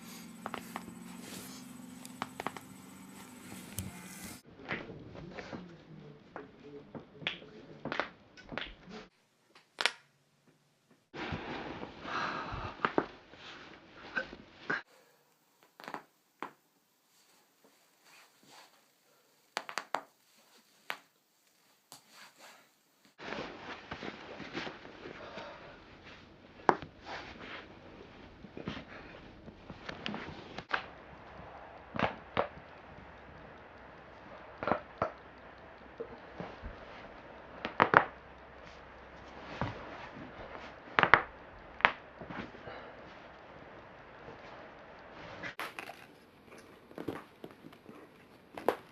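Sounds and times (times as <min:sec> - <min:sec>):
rustling movement: 0:00.0 - 0:04.4.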